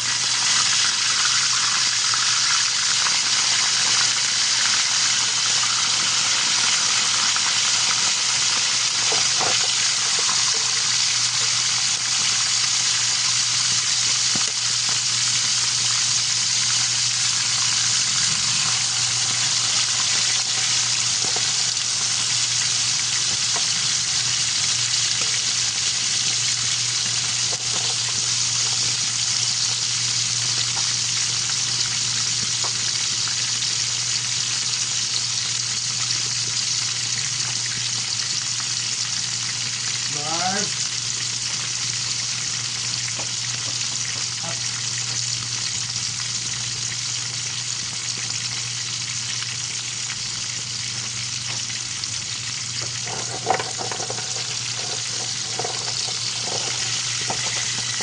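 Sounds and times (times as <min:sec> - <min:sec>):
fish frying in hot oil: 0:00.0 - 0:58.0.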